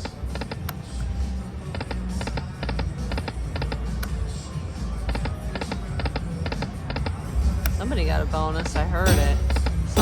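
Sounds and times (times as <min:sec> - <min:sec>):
low casino hum: 0:00.0 - 0:10.0
slot machine chiming tones: 0:08.9 - 0:10.0.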